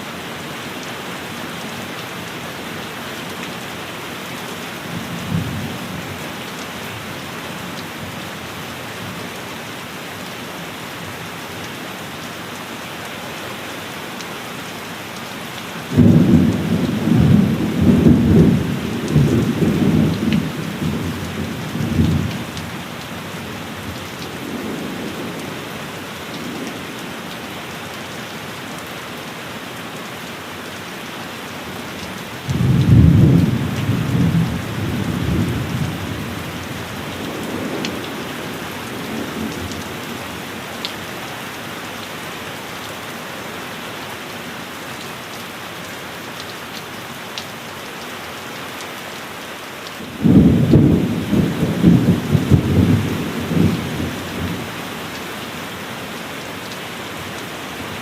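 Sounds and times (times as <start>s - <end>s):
heavy rain falling: 0.0s - 58.0s
rolling thunder: 32.5s - 36.3s, 50.1s - 54.6s.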